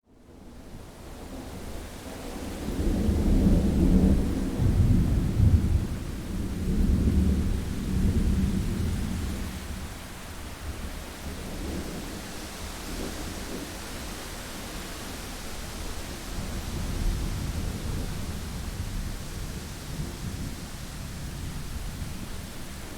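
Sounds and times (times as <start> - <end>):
steady rain: 0.2 - 22.9
rolling thunder rumble: 2.4 - 10.1.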